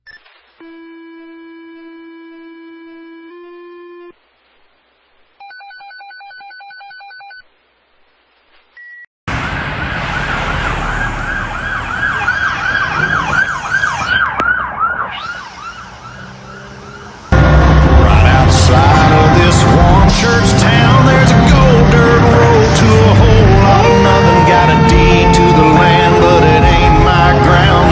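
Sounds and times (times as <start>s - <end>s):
electronic siren yelping: 0.6s - 4.1s, 9.6s - 17.4s, 22.8s - 27.9s
road noise: 9.3s - 27.9s.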